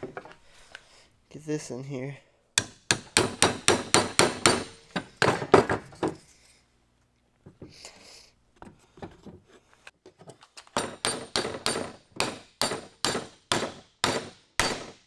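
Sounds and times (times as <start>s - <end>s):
hammer striking wood: 2.6s - 5.8s, 10.8s - 15.0s.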